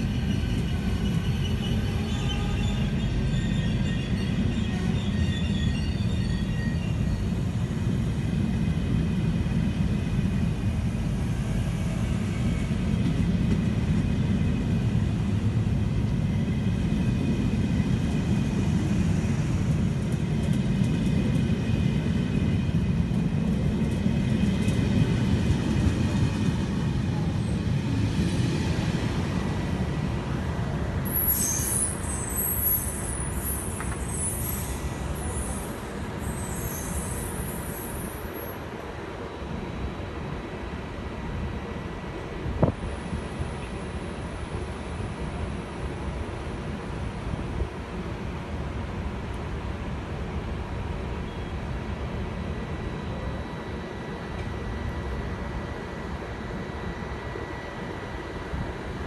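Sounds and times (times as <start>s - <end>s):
train wheels rumbling on rails: 0.0s - 59.0s
high-pitched wheel squeal: 0.2s - 7.4s, 31.1s - 38.5s.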